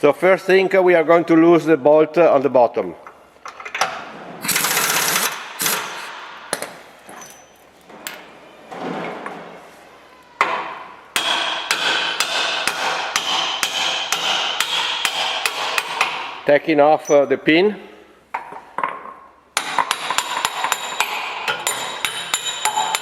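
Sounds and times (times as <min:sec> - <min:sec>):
hammer striking metal: 0:10.4 - 0:16.4, 0:19.6 - 0:23.0.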